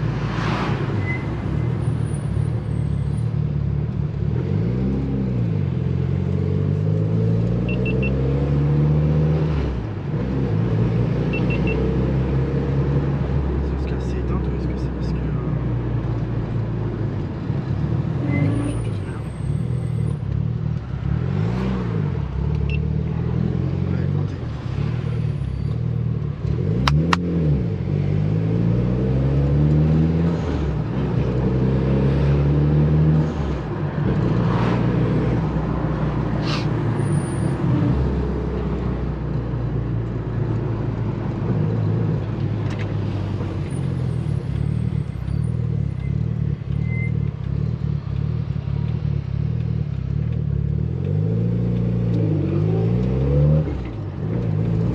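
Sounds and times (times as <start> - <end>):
car engine accelerating: 17.9 - 39.0, 40.0 - 54.9
sharp clicks: 26.8 - 27.3.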